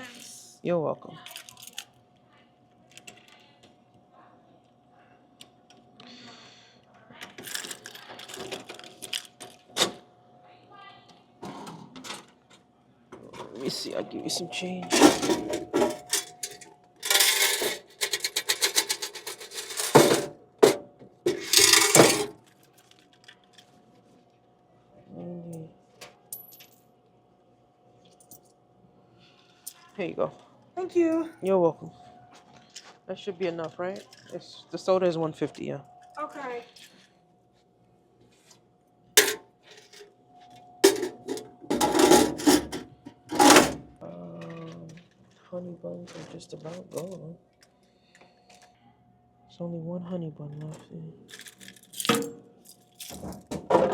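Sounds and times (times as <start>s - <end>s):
items rustling and scraping: 7.3s - 10.0s, 11.4s - 24.4s, 31.8s - 33.1s, 35.9s - 48.8s, 50.7s - 53.9s
coins clinking and jingling: 14.9s - 20.0s.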